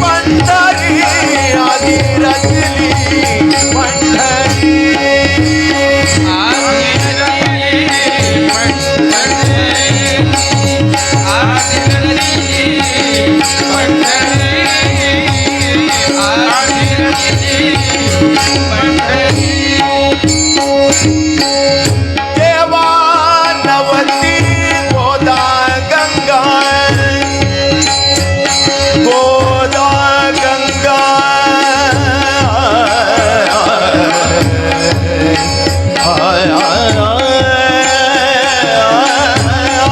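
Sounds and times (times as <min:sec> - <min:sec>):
hand drum rhythm: 0:00.0 - 0:23.0, 0:23.6 - 0:39.9.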